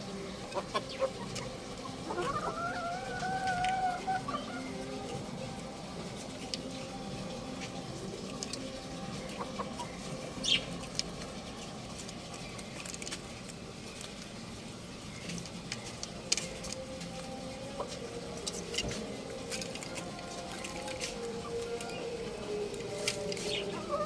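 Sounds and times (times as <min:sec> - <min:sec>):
low background hum: 0:00.0 - 0:24.0
young rooster clucking and chirping: 0:00.5 - 0:04.8.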